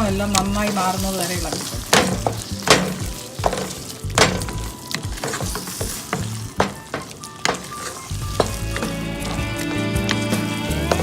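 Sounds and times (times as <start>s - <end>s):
light sizzle: 0.0s - 11.0s
spoon scraping and knocking a pan: 0.3s - 9.4s, 10.0s - 11.0s.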